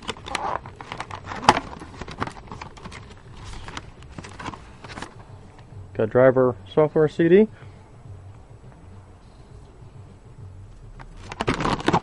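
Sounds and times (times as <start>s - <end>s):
packaging clicks and rustles: 0.0s - 5.2s, 11.0s - 12.0s.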